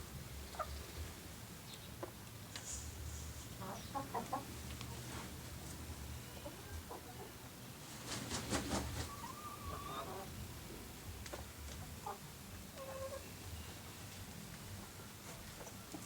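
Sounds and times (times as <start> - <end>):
chickens clucking: 3.5 - 10.4, 11.2 - 13.3
rustling: 7.8 - 9.2.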